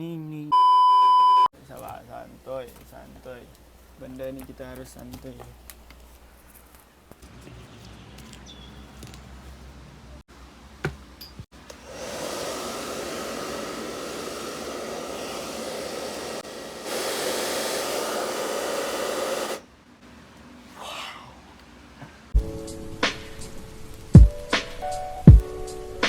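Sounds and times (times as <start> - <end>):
hair dryer blowing: 11.7 - 19.6.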